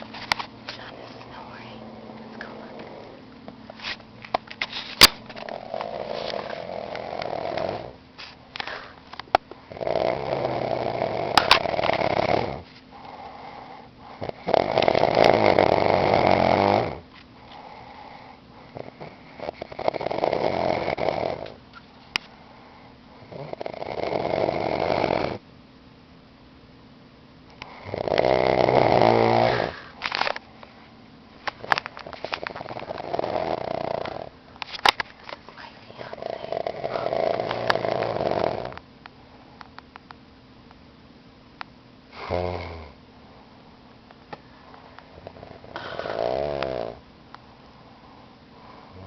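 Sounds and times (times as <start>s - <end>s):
man snoring: 5.5s - 8.0s, 9.7s - 17.0s, 17.6s - 21.6s, 23.2s - 25.4s, 27.6s - 30.0s, 32.4s - 34.4s, 36.0s - 38.8s, 42.1s - 43.0s, 45.1s - 47.0s, 48.6s - 49.0s
quiet breathing: 8.6s - 9.1s, 12.5s - 14.5s, 17.4s - 19.9s, 20.7s - 23.6s, 35.1s - 39.8s, 44.4s - 49.0s.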